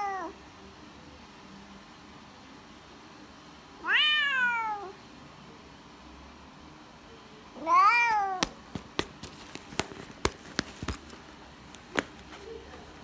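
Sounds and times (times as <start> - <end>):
cat meowing: 3.8 - 5.0, 7.6 - 8.5
sharp clicks and taps: 8.4 - 12.2.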